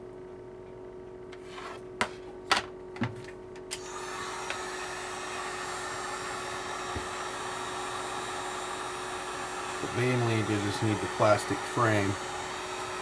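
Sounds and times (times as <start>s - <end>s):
heat gun blowing: 3.7s - 13.0s.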